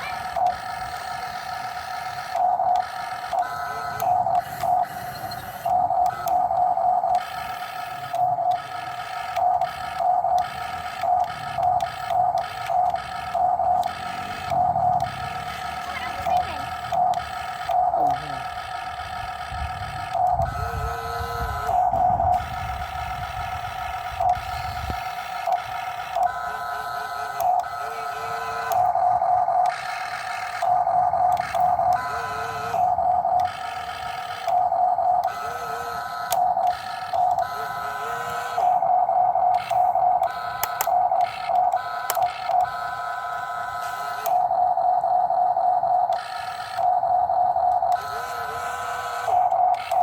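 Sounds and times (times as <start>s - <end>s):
electric motors whining: 0.0s - 50.0s.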